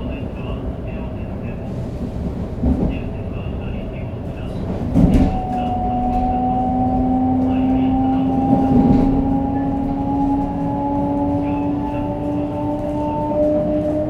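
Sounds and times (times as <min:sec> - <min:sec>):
train wheel and running noise: 0:00.0 - 0:14.0
train motors whining: 0:05.1 - 0:14.0.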